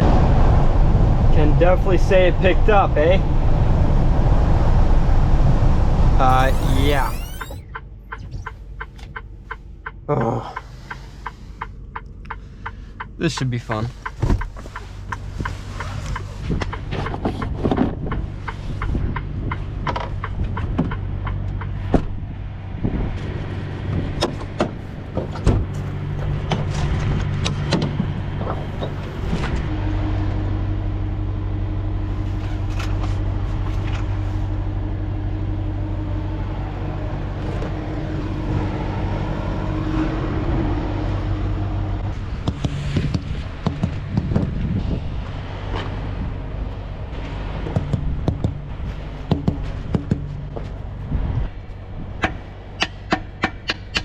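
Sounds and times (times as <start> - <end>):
steady higher drone: 6.3 - 7.7.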